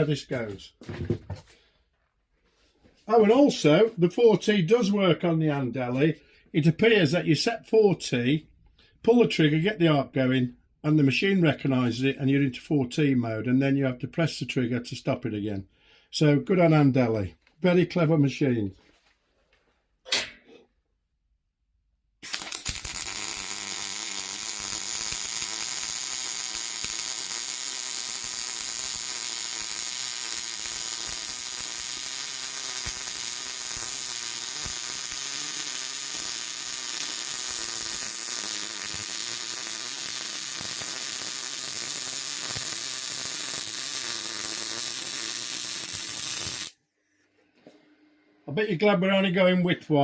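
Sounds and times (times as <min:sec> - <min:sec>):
welding arc crackling: 0:22.2 - 0:46.8.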